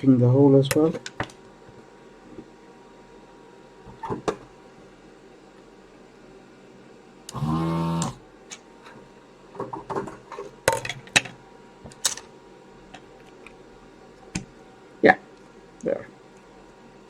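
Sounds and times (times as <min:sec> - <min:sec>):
vacuum pump buzzing: 0:07.3 - 0:08.3.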